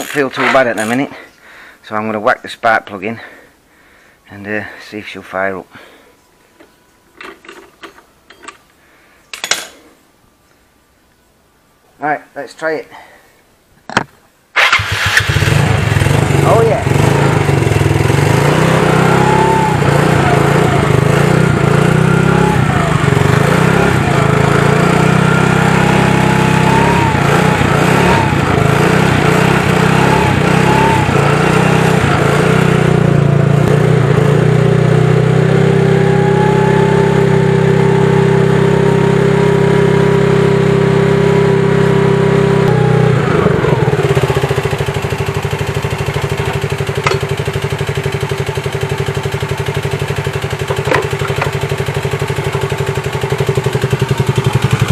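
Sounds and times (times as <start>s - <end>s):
scooter engine revving and idling: 14.6s - 54.9s.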